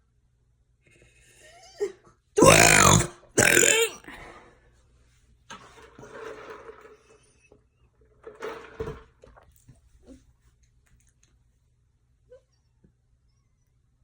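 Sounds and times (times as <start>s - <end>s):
person burping: 2.4s - 4.1s
breathy mouth and throat sounds: 2.4s - 4.3s.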